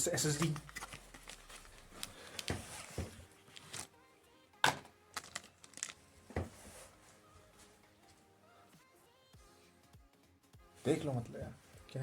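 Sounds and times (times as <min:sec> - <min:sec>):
faint background music: 0:00.0 - 0:12.0
packaging handling clicks and knocks: 0:00.2 - 0:03.9, 0:04.6 - 0:06.6.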